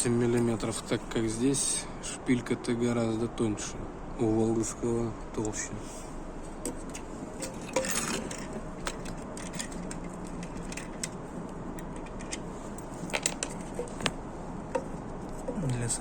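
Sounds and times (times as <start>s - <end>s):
steady background hiss: 0.0s - 16.0s
metal tools clicking and clinking: 6.6s - 14.1s.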